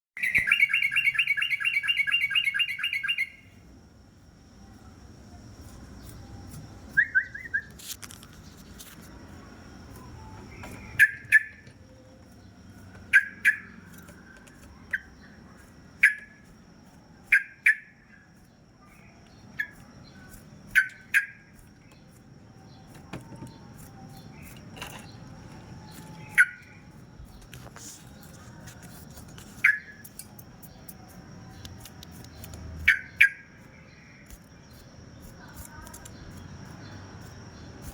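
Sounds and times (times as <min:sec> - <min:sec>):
bird calls: 0:00.2 - 0:03.5, 0:09.9 - 0:11.8, 0:12.4 - 0:16.4, 0:19.0 - 0:25.2, 0:25.8 - 0:27.5, 0:29.6 - 0:30.1, 0:32.4 - 0:35.6.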